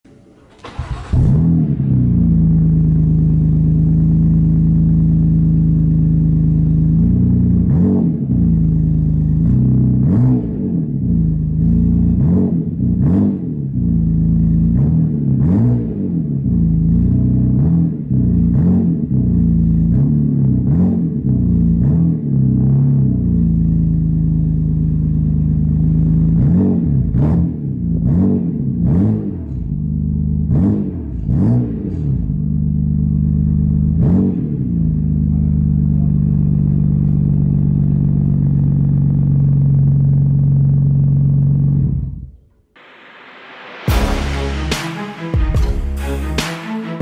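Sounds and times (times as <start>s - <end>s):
car engine cranking: 0.1s - 1.7s
engine revving in blips: 0.1s - 23.9s, 25.0s - 38.7s.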